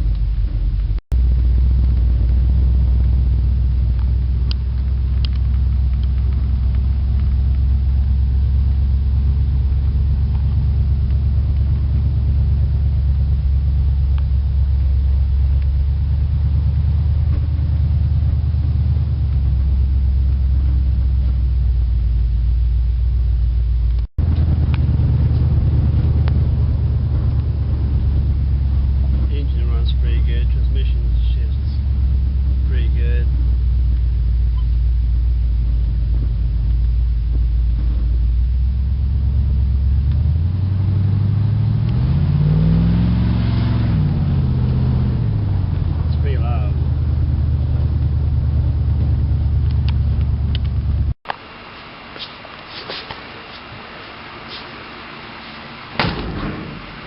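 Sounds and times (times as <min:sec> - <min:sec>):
car engine idling: 0:00.0 - 0:57.0.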